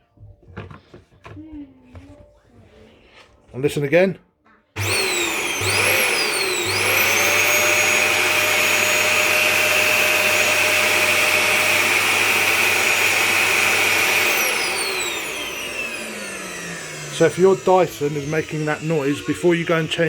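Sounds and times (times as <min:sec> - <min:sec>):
vacuum cleaner motor whining: 0:04.8 - 0:20.0.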